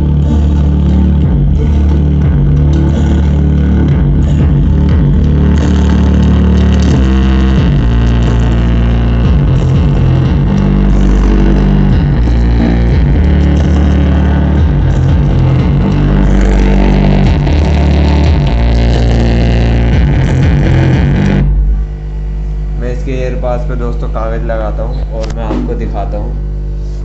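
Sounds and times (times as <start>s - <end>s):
song through car speakers: 0.0s - 22.8s
strong bass notes: 0.0s - 27.0s.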